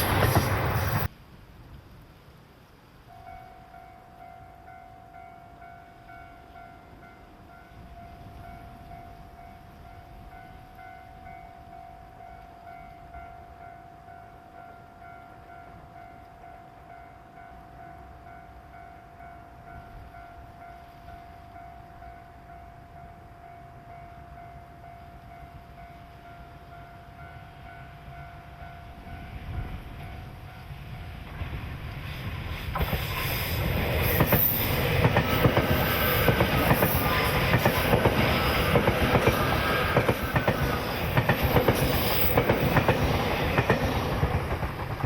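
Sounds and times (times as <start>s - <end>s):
wind rumble on microphone: 29.0s - 45.0s.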